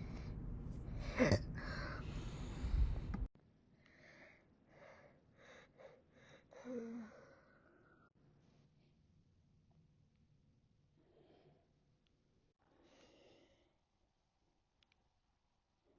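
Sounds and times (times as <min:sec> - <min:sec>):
soft breaths: 0:00.0 - 0:09.0.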